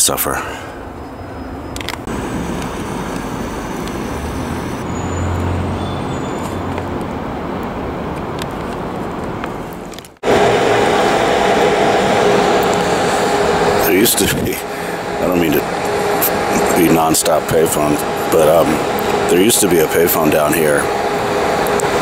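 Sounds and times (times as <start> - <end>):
road noise: 0.0 - 22.0
steady two-tone drone: 0.9 - 5.7, 10.2 - 22.0
vehicle engine hum: 1.8 - 22.0.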